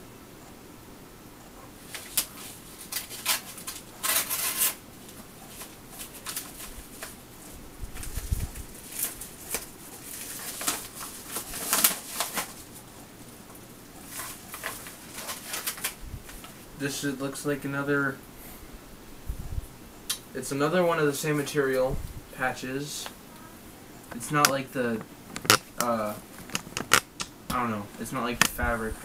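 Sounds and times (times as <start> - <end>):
envelope crinkling and rustling: 1.8 - 13.0, 14.0 - 16.7
envelope tearing: 1.9 - 4.8, 8.0 - 12.8, 14.1 - 16.0
sharp clicks: 25.3 - 27.6.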